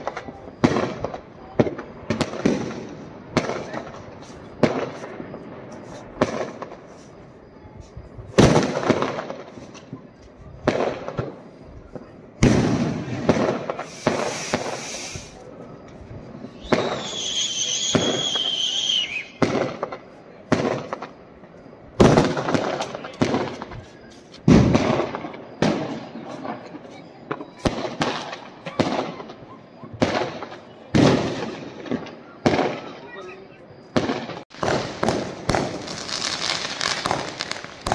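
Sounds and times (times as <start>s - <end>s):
firecracker bang: 0.0s - 7.0s, 10.6s - 15.4s, 16.4s - 26.7s, 27.4s - 32.9s, 33.9s - 37.9s
crackling hiss: 0.0s - 37.9s
firecracker cracks: 12.4s - 15.5s, 16.6s - 21.2s, 34.0s - 37.9s.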